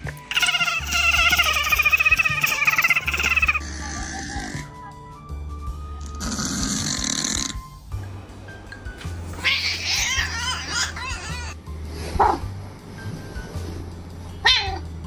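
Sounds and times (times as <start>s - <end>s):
background music: 0.0s - 15.0s
cat meowing: 0.3s - 3.6s, 9.3s - 11.6s, 14.4s - 14.8s
cat warbling calls: 0.3s - 3.6s, 9.2s - 11.6s.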